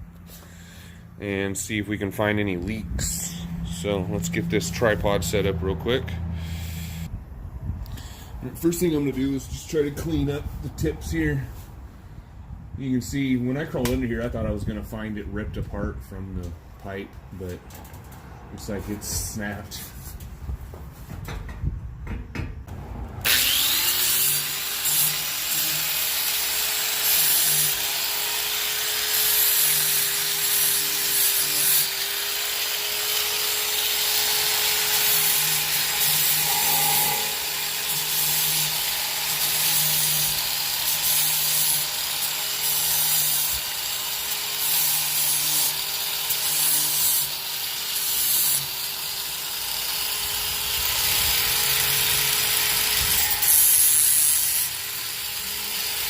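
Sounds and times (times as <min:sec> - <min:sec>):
power grinder grinding metal: 0:23.2 - 0:56.0.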